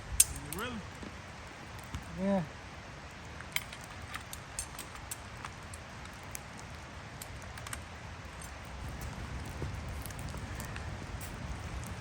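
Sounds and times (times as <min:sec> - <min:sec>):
steady low rumble: 0:07.8 - 0:12.0.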